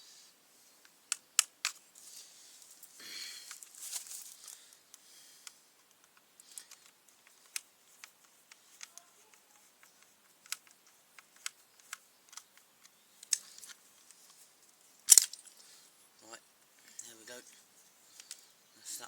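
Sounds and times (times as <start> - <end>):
faint metal clicks and taps: 4.4 - 14.8.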